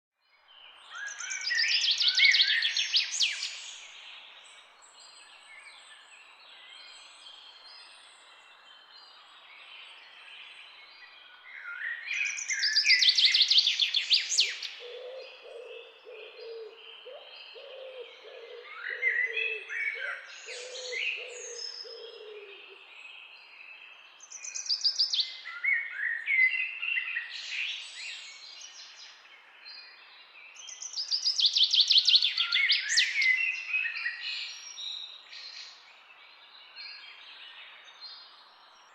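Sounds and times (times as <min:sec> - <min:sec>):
quiet bird chirps: 0:00.2 - 0:38.9
loud trilled birdsong: 0:12.3 - 0:23.6.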